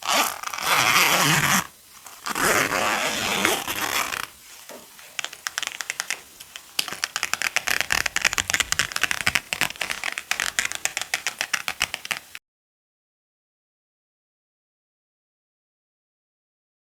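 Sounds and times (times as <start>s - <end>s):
rapid sharp clicks: 5.2s - 12.4s.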